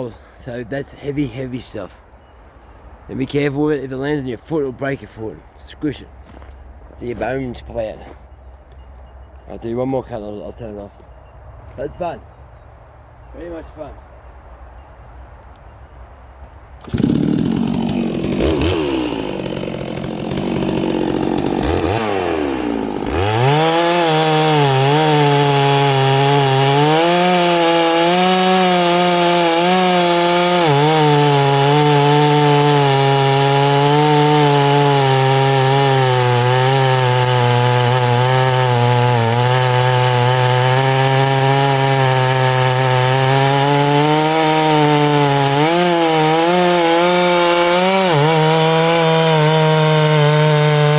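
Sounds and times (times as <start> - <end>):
chainsaw cutting wood: 16.8 - 50.9.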